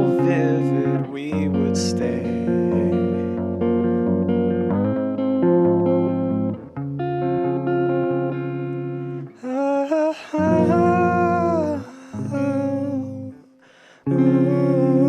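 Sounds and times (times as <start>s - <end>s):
guitar chords: 0.0s - 15.0s
wordless held vocal: 9.4s - 15.0s.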